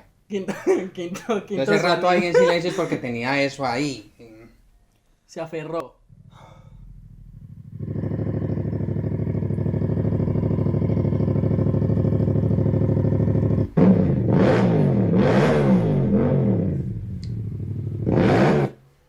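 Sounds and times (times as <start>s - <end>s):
motorcycle engine idling and revving: 6.1s - 18.8s.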